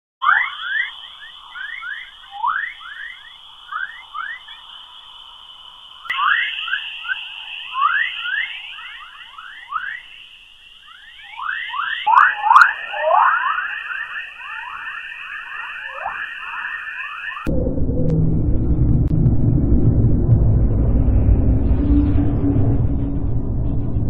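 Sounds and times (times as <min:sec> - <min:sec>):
chirping whistles: 0:00.2 - 0:17.5
steady high hiss: 0:00.2 - 0:17.5.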